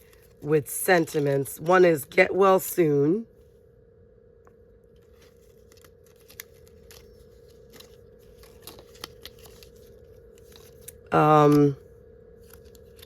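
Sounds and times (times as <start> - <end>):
faint steady hum: 0.0 - 13.0
packaging rustling: 5.0 - 11.1.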